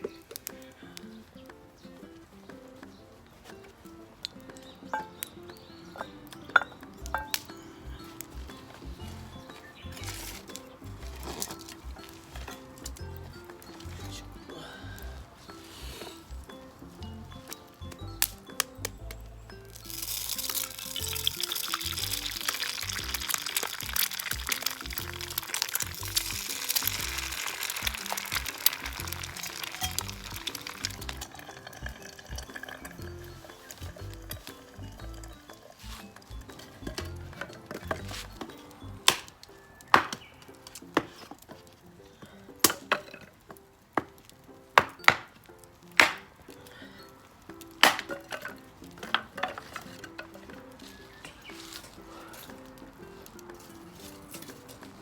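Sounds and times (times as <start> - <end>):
background music: 0.0 - 55.0
food frying in a grill pan: 19.7 - 35.9
wood being chopped: 37.9 - 41.3, 42.6 - 43.1, 44.0 - 45.4, 46.0 - 46.3, 47.8 - 49.8.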